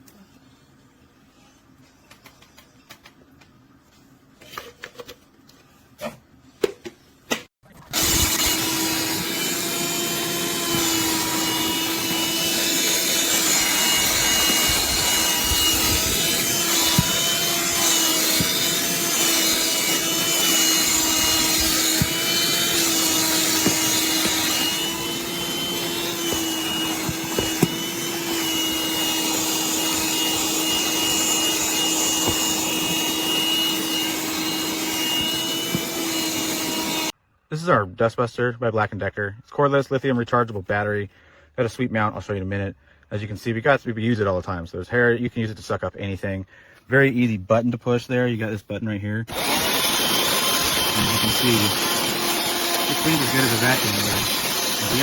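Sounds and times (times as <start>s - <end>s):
handheld vacuum whining: 7.9s - 37.2s, 49.3s - 55.0s.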